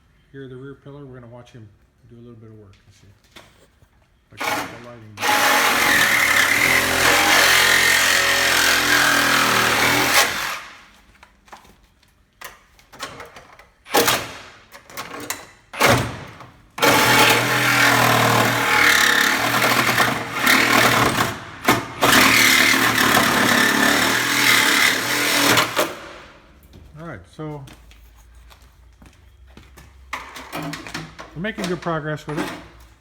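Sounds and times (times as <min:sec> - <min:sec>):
power tool cutting metal: 0:04.4 - 0:10.9, 0:16.8 - 0:26.3.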